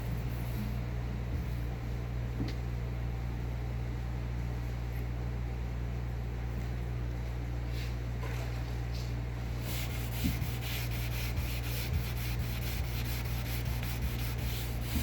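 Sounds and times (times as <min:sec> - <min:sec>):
steady low hum: 0:00.0 - 0:15.0
sandpaper rubbing strokes: 0:09.6 - 0:15.0.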